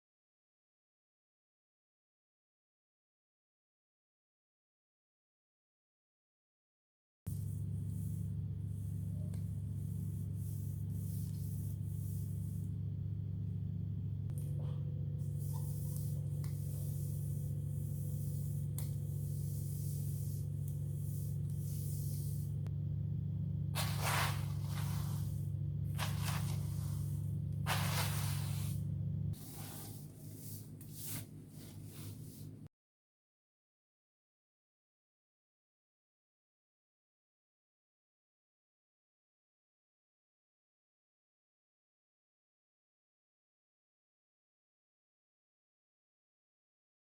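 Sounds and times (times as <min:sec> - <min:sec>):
cloth rubbing a surface: 0:07.3 - 0:12.8, 0:14.6 - 0:22.7, 0:23.8 - 0:32.7
steady low hum: 0:07.3 - 0:32.7
short hissing swishes: 0:15.2 - 0:22.7, 0:23.8 - 0:32.6.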